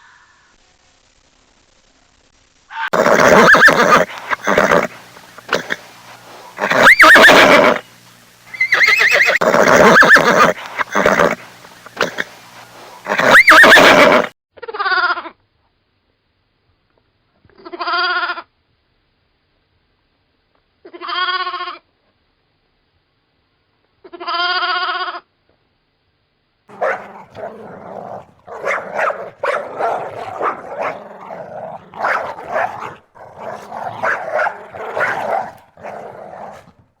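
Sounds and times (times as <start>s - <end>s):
dog barking rapidly: 3.0s - 7.8s, 8.6s - 14.3s, 26.7s - 36.8s
wavering animal bleats: 3.0s - 7.8s, 8.6s - 14.3s, 26.7s - 36.8s.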